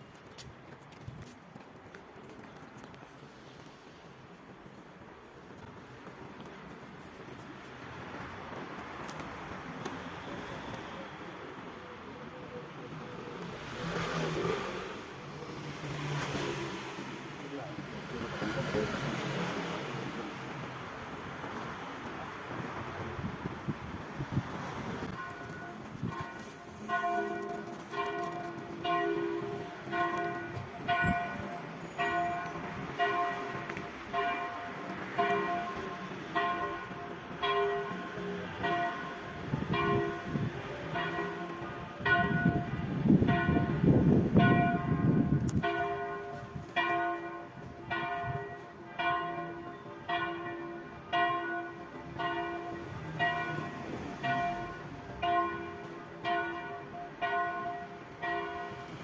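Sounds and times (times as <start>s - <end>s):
church bells tolling: 25.0s - 59.0s.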